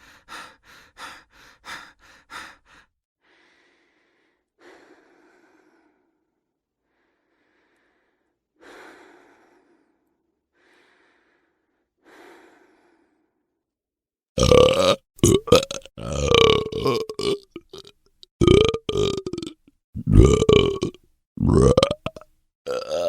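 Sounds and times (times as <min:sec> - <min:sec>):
person breathing: 0:00.0 - 0:13.6.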